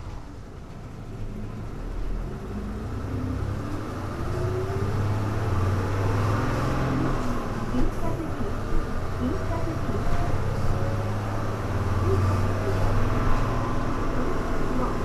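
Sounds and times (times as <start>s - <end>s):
bus engine accelerating: 0.0s - 15.0s.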